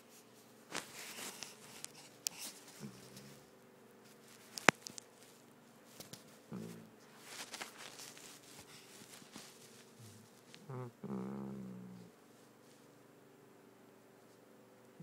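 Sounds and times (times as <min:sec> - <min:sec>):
dog snoring: 0:06.5 - 0:06.9, 0:10.0 - 0:12.2.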